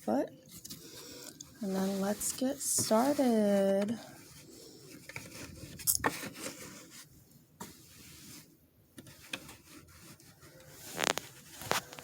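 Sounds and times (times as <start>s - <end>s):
fabric rubbing and scraping: 0.5s - 12.0s.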